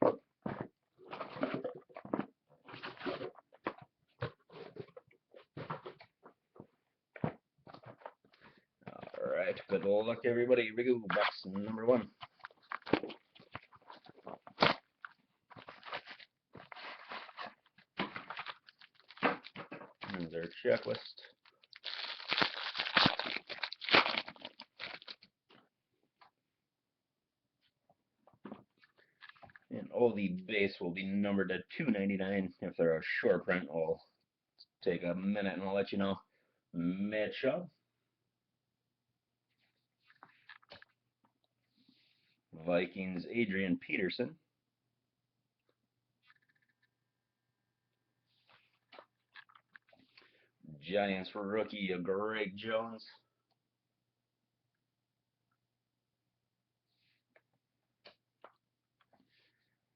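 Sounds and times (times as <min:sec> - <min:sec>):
packaging crinkling and tearing: 0:12.3 - 0:25.3
cardboard rustling and scraping: 0:15.5 - 0:18.6.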